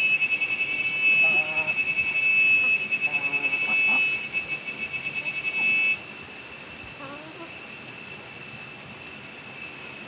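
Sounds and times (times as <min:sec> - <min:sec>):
faint high whine: 0:00.0 - 0:10.0
high-pitched pulsing buzz: 0:00.0 - 0:10.0
chickens clucking: 0:01.2 - 0:01.8, 0:02.6 - 0:04.2, 0:06.9 - 0:07.5.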